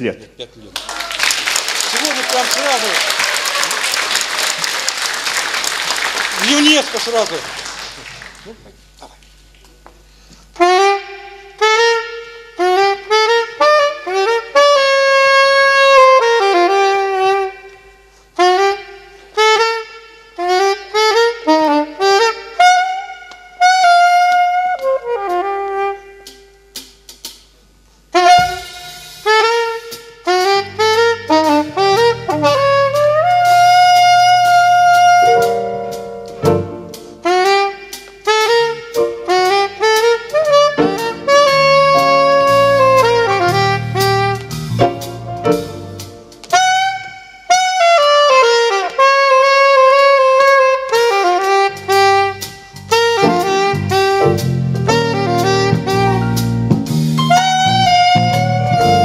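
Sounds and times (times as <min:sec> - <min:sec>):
saxophone melody: 0:10.5 - 0:26.7, 0:28.1 - 0:59.0
low bass accompaniment: 0:20.5 - 0:59.0.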